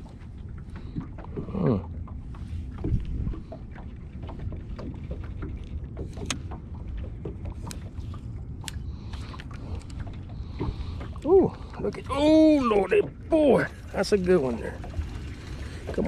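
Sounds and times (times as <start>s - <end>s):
low rumble of wind and water: 0.0s - 16.0s
light clicks and knocks: 2.2s - 12.1s.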